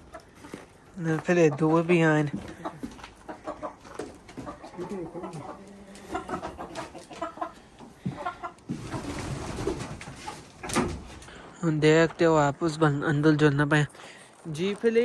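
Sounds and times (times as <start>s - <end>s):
chickens clucking: 0.0s - 13.4s.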